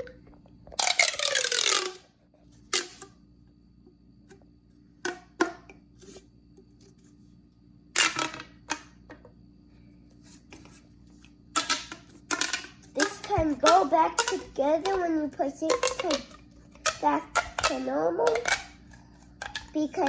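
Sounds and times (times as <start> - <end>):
plastic fidget toy clicking: 11.6 - 18.8.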